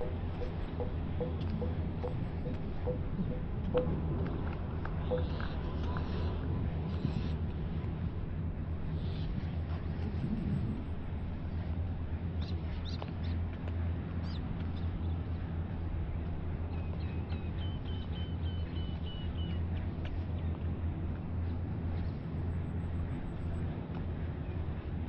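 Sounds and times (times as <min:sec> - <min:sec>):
steady low hum: 0:00.0 - 0:25.0
bird chirps: 0:05.0 - 0:06.2.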